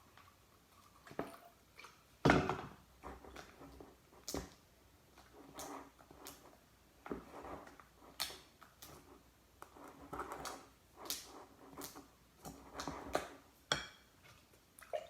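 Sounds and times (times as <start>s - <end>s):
slime stirred wet swishes: 3.0s - 13.5s.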